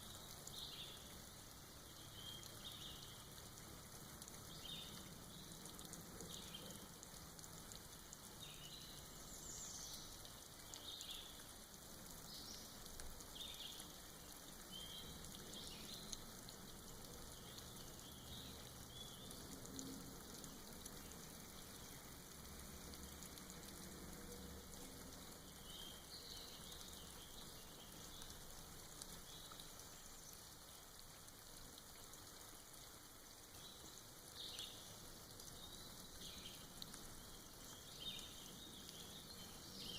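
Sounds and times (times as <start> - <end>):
soft rain dripping: 0.0 - 39.9.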